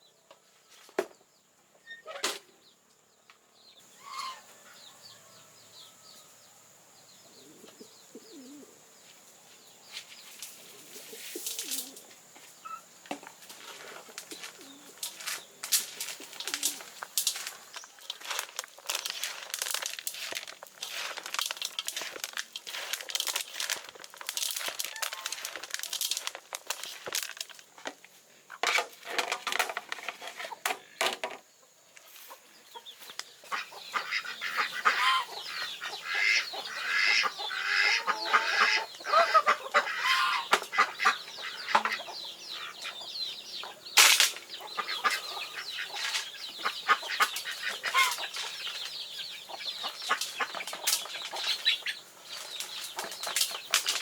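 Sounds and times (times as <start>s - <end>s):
rustling and scraping: 9.0s - 32.4s, 44.0s - 54.0s
chickens clucking: 10.2s - 30.9s, 31.6s - 54.0s.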